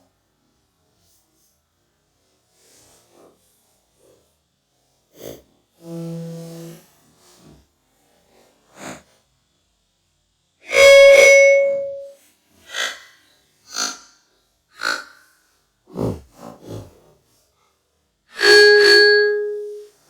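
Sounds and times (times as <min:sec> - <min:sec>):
ringing electronic chime: 0:10.7 - 0:12.2, 0:18.4 - 0:19.8
short electronic blip: 0:10.7 - 0:12.2, 0:18.4 - 0:19.8
short electronic tones: 0:10.7 - 0:12.2, 0:18.4 - 0:19.8.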